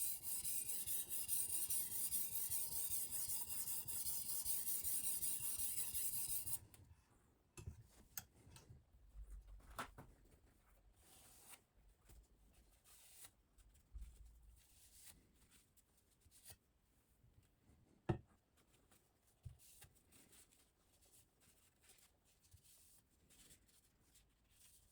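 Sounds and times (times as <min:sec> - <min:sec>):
sharpening stone rasping on knife: 0:00.0 - 0:06.6.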